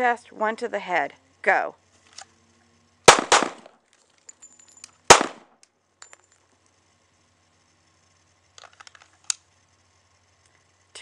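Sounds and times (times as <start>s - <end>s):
pistol shot with echo: 3.1s - 3.7s, 5.1s - 5.5s
faint metallic clinks: 3.8s - 5.0s, 6.0s - 6.5s.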